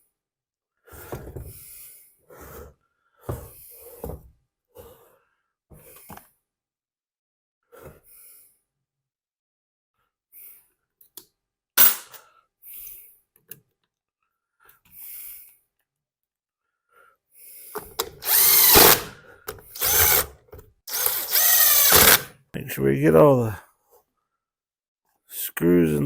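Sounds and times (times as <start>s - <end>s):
electric drill driving screws: 18.0s - 22.3s.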